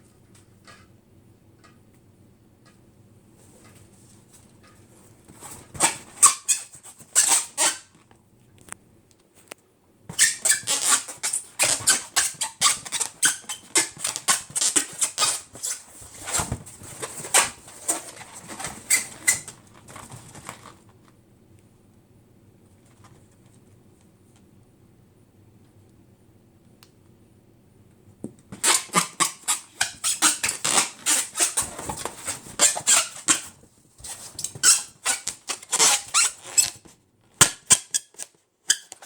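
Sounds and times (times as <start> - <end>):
rubber balloons squeaking: 5.5 - 8.0, 10.1 - 19.6, 28.6 - 39.0.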